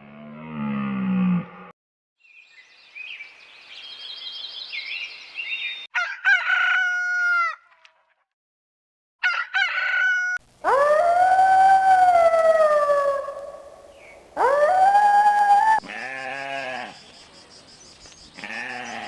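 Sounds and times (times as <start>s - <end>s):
rooster crowing: 9.2s - 15.8s
high chirping: 10.6s - 15.8s
long howl: 10.6s - 15.8s.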